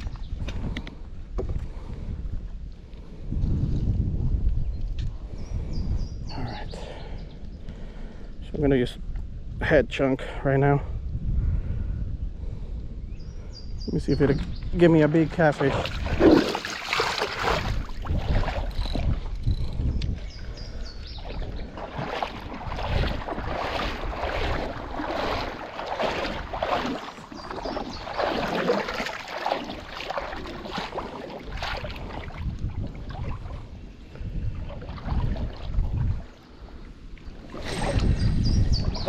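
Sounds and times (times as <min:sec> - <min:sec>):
wind buffeting microphone: 0:00.0 - 0:39.0
water sloshing and splashing: 0:15.0 - 0:39.0.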